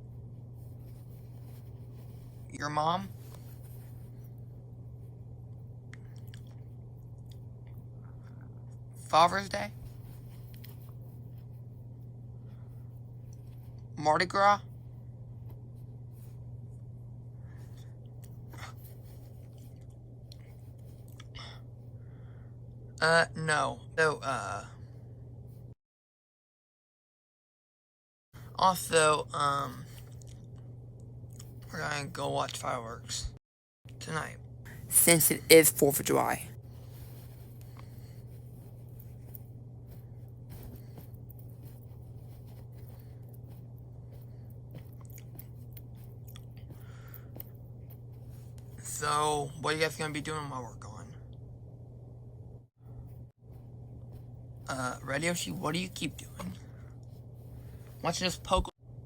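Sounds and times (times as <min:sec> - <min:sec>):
soft rustles: 0:00.0 - 0:06.9, 0:09.7 - 0:13.9, 0:14.8 - 0:21.2, 0:36.1 - 0:48.9
low electrical hum: 0:00.0 - 0:25.8, 0:28.4 - 0:59.0.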